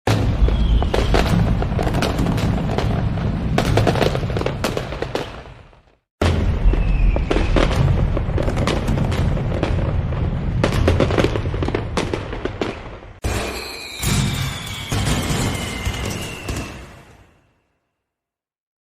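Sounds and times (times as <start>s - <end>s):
falling firework whistle: 0.1s - 2.8s, 6.2s - 8.1s, 13.2s - 17.8s
fireworks crackling and popping: 0.1s - 17.3s
deep fireworks booming: 0.1s - 17.4s.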